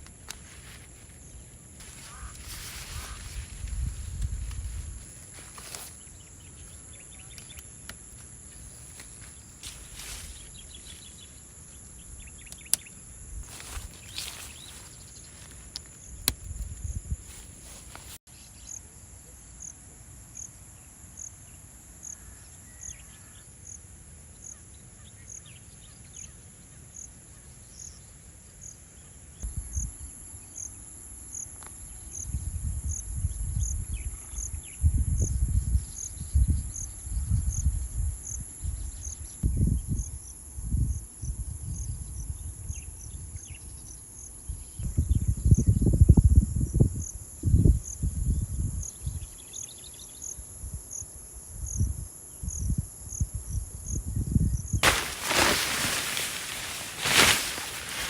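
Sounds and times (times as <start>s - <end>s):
cricket chirping: 0.0s - 44.8s, 47.5s - 58.0s
insect buzzing: 0.2s - 11.4s, 12.6s - 18.2s.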